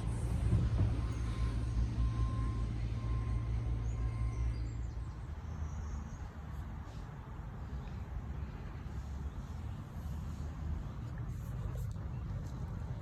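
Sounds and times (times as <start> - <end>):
outdoor background noise: 0.0 - 13.0
vehicle engine humming: 0.0 - 13.0.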